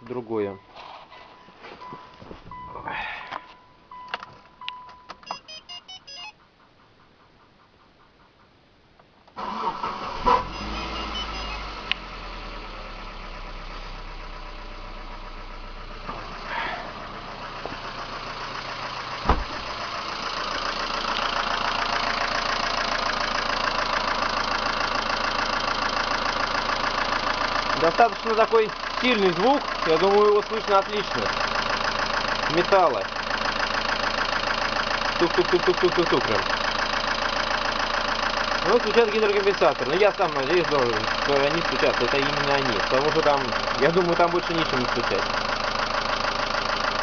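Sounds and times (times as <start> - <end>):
car engine starting and idling: 0.0 - 47.0
short beeps: 3.4 - 6.4, 10.6 - 11.7.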